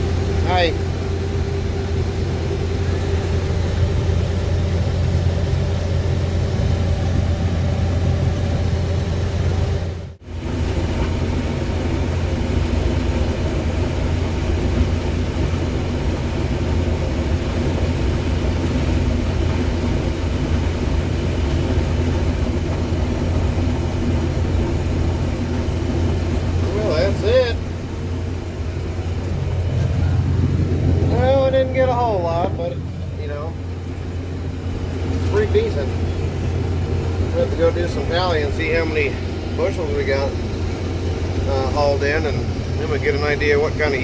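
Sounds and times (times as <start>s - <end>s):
diesel engine humming under load: 0.0s - 44.0s.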